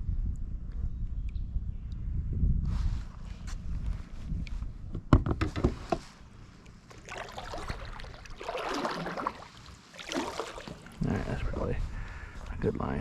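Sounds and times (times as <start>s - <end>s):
paddle strokes splashing in water: 6.9s - 11.0s.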